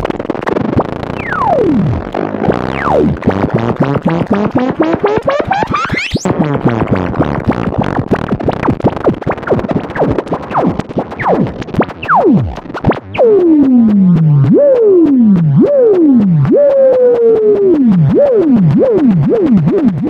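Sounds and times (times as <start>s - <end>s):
synthesizer clicking pulse pattern: 0.0s - 20.0s
synthesizer pulsing tones: 0.8s - 20.0s
synthesizer tone gliding down: 1.1s - 8.6s, 9.4s - 20.0s.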